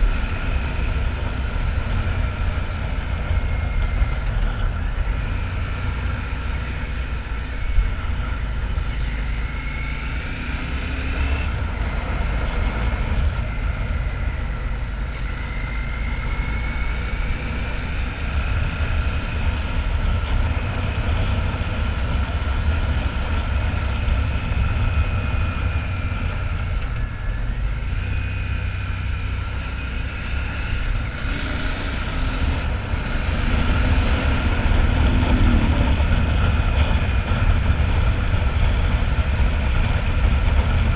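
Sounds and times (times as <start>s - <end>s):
motorcycle engine running: 0.0s - 40.9s
wind rumble on microphone: 29.2s - 40.9s.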